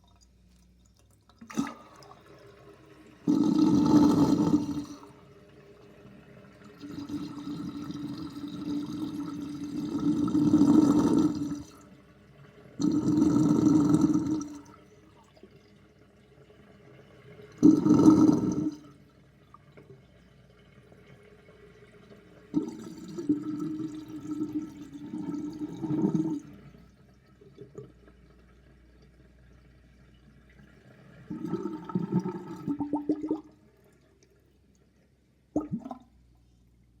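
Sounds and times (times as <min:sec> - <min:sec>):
sink drain gurgling: 0:00.0 - 0:34.8, 0:35.5 - 0:36.1.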